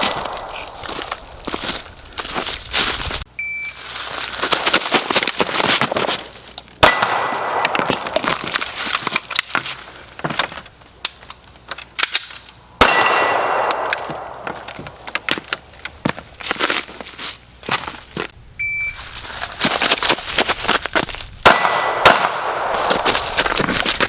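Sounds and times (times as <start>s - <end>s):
pistol shots: 0.0s - 1.3s, 6.8s - 8.2s, 12.8s - 15.0s, 21.4s - 23.2s
metallic ring of steel target: 6.8s - 8.3s, 12.8s - 14.5s, 21.4s - 23.4s.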